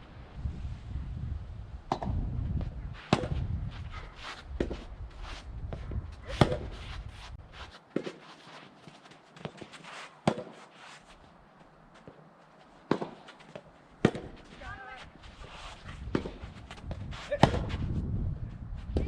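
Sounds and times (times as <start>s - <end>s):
wind rumble on microphone: 0.0s - 7.6s, 15.1s - 19.0s
tennis rackets hitting balls: 3.1s - 3.4s, 6.3s - 6.8s, 7.9s - 10.7s, 12.8s - 17.8s.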